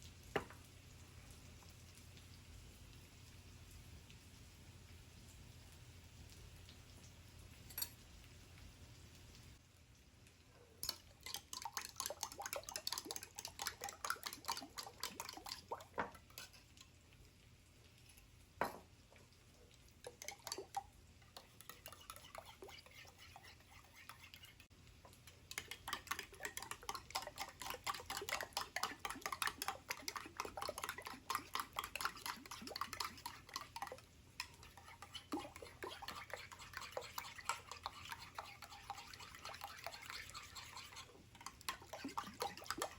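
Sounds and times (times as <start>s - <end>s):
utensils scraping a pan: 21.3s - 24.7s, 25.5s - 42.9s.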